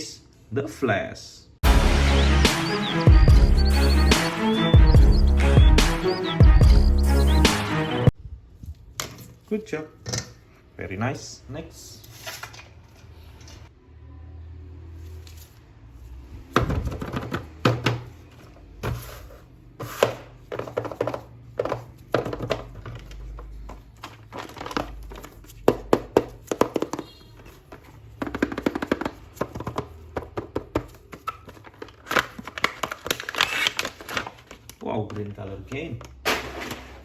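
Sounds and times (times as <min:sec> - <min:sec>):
plastic packaging clicks and crinkles: 0:22.1 - 0:25.7, 0:30.8 - 0:35.4.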